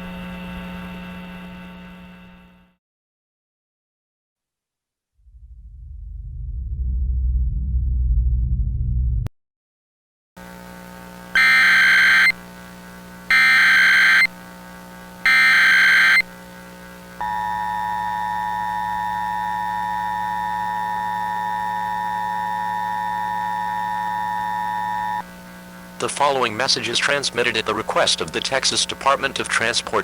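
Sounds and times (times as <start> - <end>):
data bursts: 11.4 - 12.4, 13.3 - 14.3, 15.2 - 16.3
two-tone alert signal: 11.4 - 12.4, 13.3 - 14.3, 15.3 - 16.2
low steady hum: 17.1 - 30.0.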